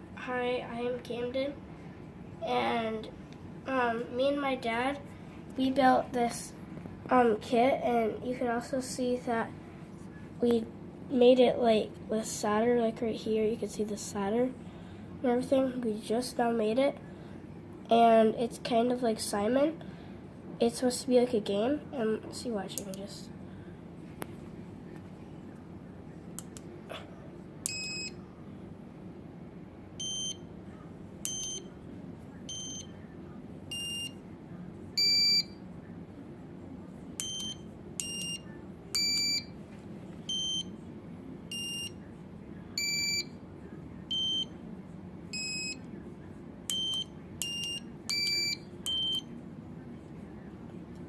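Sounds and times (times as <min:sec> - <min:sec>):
electronic beeps at different pitches: 0:31.3 - 0:31.6, 0:32.5 - 0:32.9, 0:40.3 - 0:40.7.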